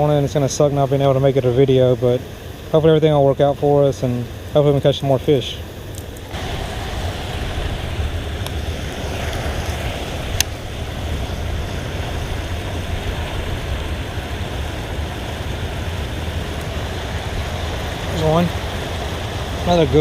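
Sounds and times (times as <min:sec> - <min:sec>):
wind buffeting microphone: 0:00.0 - 0:20.0
water pouring over waterfall: 0:06.3 - 0:20.0.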